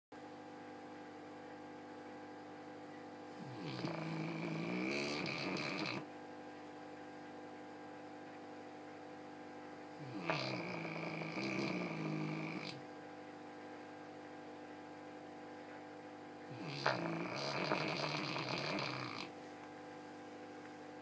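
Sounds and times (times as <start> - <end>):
faint steady hum: 0.2 - 21.0
dog snoring: 3.3 - 6.1, 9.9 - 12.9, 16.5 - 19.4.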